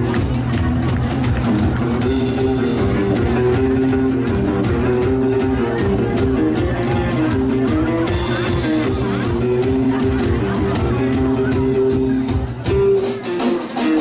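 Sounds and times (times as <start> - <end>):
band music with guitars: 0.0 - 14.0.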